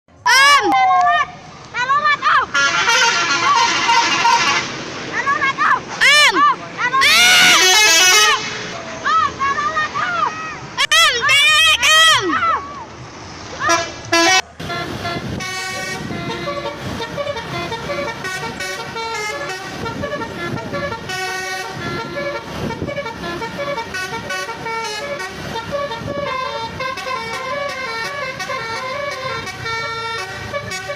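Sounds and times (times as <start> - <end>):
engine rumble: 0.1 - 30.9
street noise: 0.1 - 30.9
melody horn playing a tune: 2.5 - 4.8, 7.1 - 8.5, 13.7 - 30.9.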